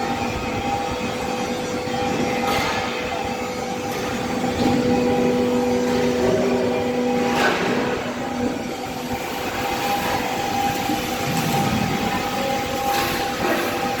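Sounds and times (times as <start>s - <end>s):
machine whine: 0.0s - 14.0s
workshop machinery running: 0.0s - 14.0s.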